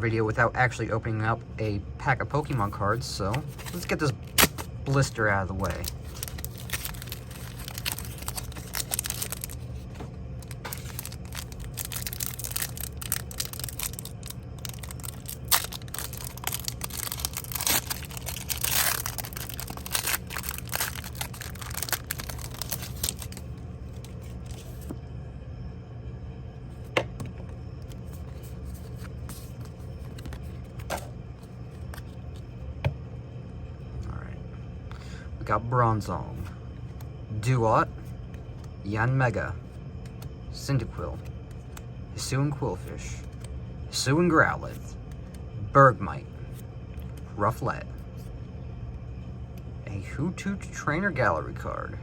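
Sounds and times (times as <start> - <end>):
low hum: 0.0 - 52.0
plastic packaging crinkling: 3.5 - 24.9.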